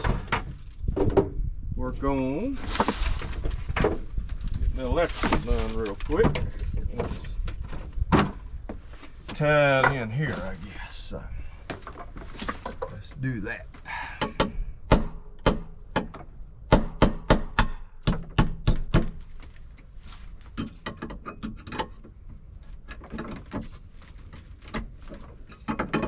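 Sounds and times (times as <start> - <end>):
hardware knocks and clicks: 13.7 - 19.3, 20.5 - 23.7, 24.7 - 26.0.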